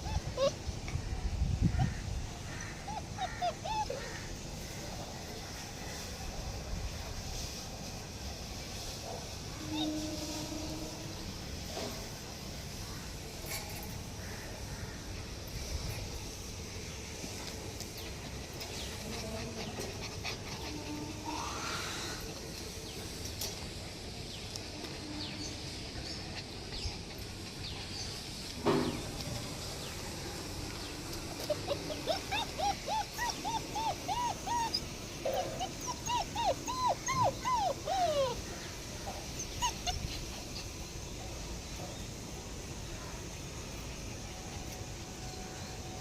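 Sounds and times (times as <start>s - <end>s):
puppies whining: 0.0s - 0.6s, 2.8s - 4.4s, 31.3s - 40.8s.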